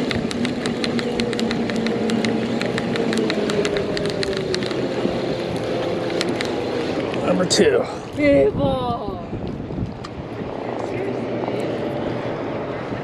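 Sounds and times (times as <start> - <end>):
rapid irregular clicking: 0.0 - 7.3
motorboat engine running: 0.0 - 13.0.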